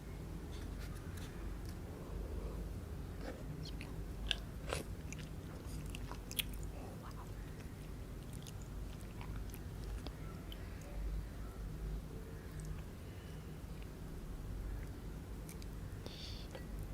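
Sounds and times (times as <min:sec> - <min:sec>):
crunchy food chewing: 0:03.2 - 0:10.9.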